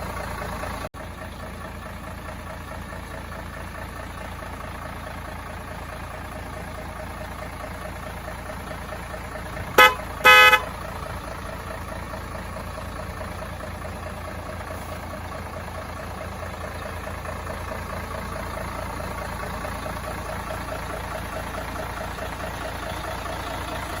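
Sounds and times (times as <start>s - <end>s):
model truck running: 0.0s - 24.0s
short horn toots: 9.8s - 10.7s.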